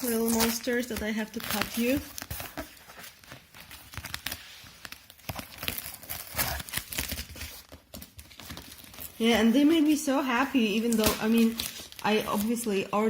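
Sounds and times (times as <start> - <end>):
wrapping paper tearing and crinkling: 0.0 - 13.0.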